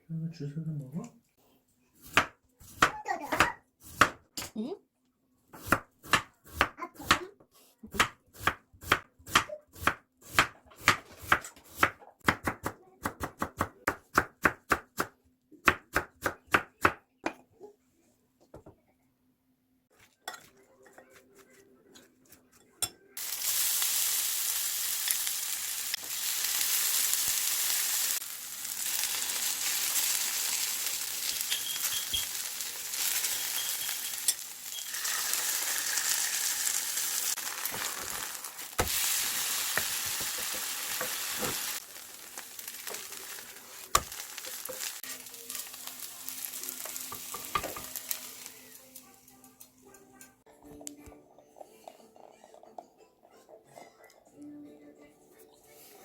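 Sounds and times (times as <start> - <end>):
knife chopping on cutting board: 2.0 - 4.2, 5.6 - 7.2, 7.9 - 17.0
food sizzling in hot pan: 23.2 - 48.8.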